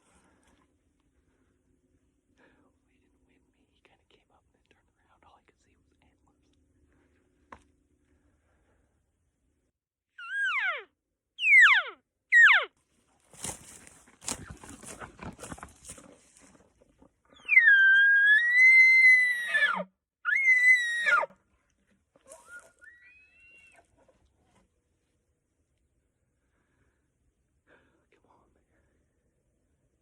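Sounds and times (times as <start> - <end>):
elk squealing mews: 10.2 - 12.7, 17.4 - 21.3, 22.3 - 23.9.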